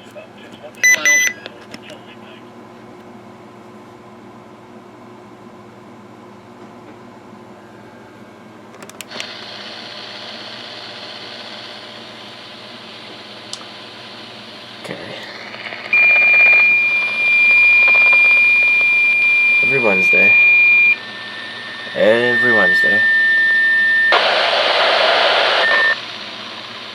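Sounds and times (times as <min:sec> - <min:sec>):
weather radio alert tone: 0:00.8 - 0:01.4, 0:15.9 - 0:26.0
low radio hiss: 0:09.1 - 0:26.9.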